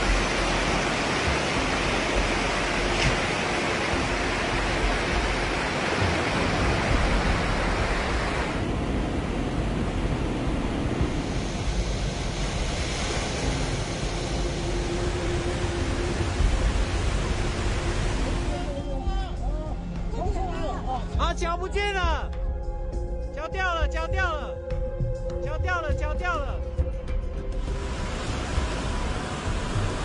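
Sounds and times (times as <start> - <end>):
fast-flowing floodwater rushing: 0.0 - 10.2, 10.8 - 19.4, 27.6 - 30.0.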